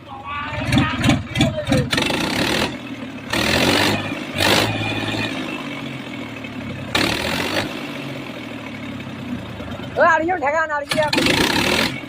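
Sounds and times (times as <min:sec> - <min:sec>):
tractor diesel engine running: 0:00.0 - 0:12.0.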